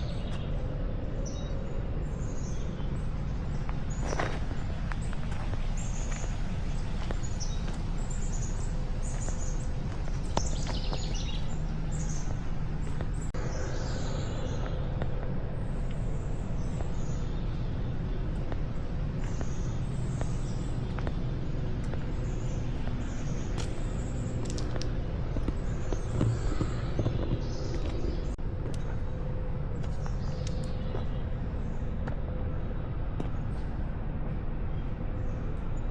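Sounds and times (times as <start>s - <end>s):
songbirds chirping: 0.0s - 35.9s
steady low rumble: 0.0s - 35.9s.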